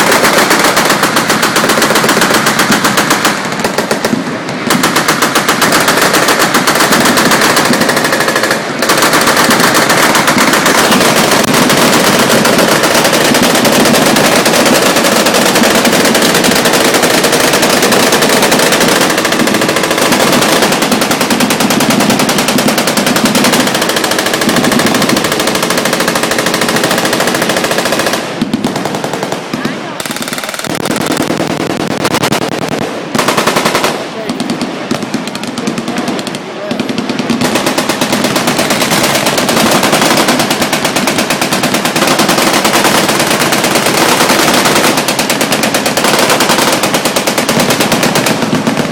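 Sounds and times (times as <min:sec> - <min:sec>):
machine guns firing: 0:00.0 - 0:48.9.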